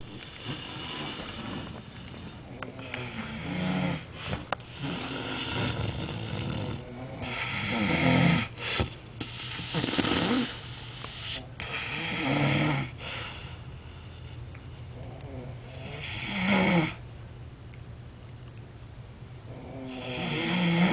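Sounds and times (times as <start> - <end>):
man snoring heavily: 0.2 - 10.7, 11.6 - 13.0, 15.3 - 17.0, 19.5 - 20.9.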